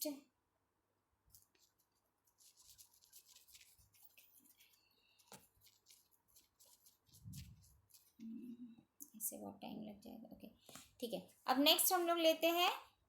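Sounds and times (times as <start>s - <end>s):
faint scratching strokes: 1.3s - 8.6s.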